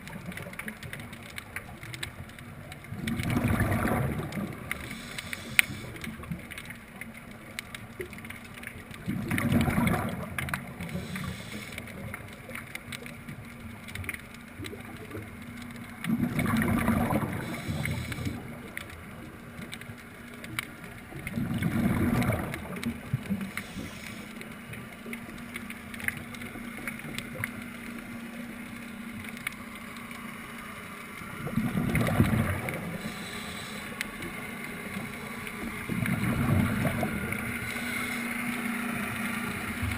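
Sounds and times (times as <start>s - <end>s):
faint clicks: 0.0s - 39.9s
underwater bubbling bursts: 0.0s - 39.9s
steady hiss: 4.6s - 6.9s, 10.8s - 12.3s, 17.2s - 19.2s, 23.0s - 27.0s, 32.5s - 35.9s, 37.2s - 39.9s.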